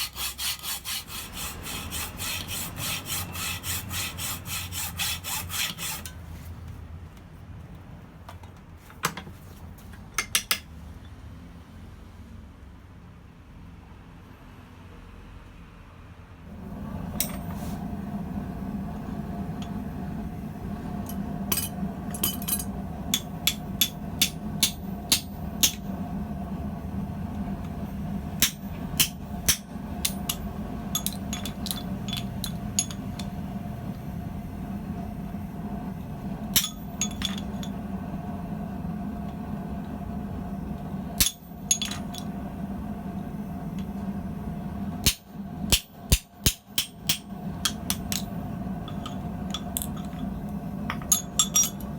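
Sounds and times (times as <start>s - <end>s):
steady low hum: 16.5s - 51.9s
hammer ringing on anvil: 36.6s - 37.4s, 50.9s - 51.8s.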